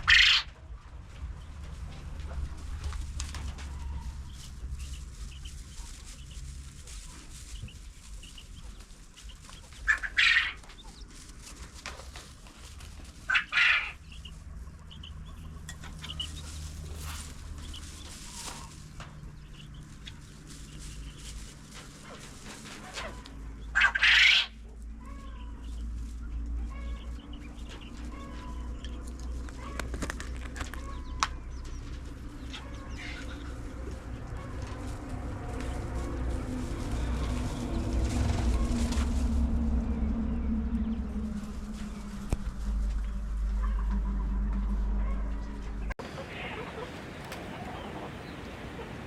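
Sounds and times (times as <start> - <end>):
loud chicken calls: 0.0 - 0.6, 9.4 - 10.8, 13.3 - 14.1, 22.0 - 25.7, 26.6 - 39.8
low steady rumble: 0.0 - 46.0
chickens clucking: 0.0 - 49.0.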